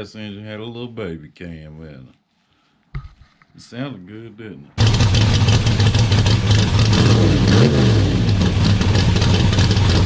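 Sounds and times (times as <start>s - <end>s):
engine running and revving: 4.8s - 10.0s.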